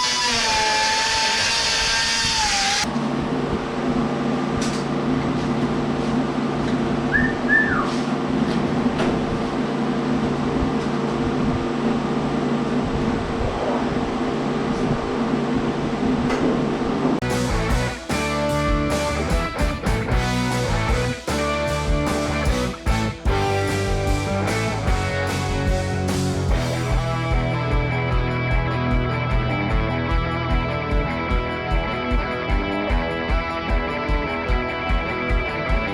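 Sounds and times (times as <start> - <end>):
power tool motor hum: 0.0 - 2.9
guitar music: 17.2 - 35.9.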